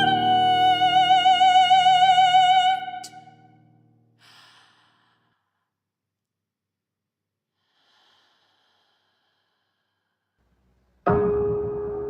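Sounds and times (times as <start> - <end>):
soprano singing with vibrato: 0.0 - 3.4.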